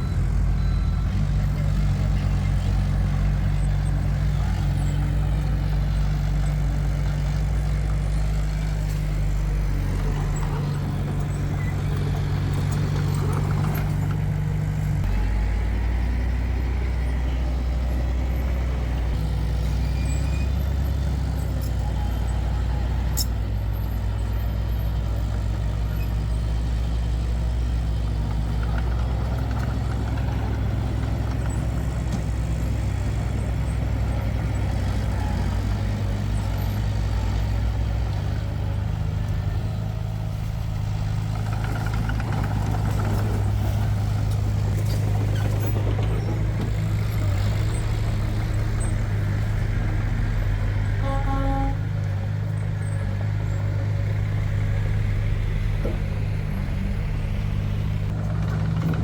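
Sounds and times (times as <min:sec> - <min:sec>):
diesel construction machinery running: 0:00.0 - 0:59.0.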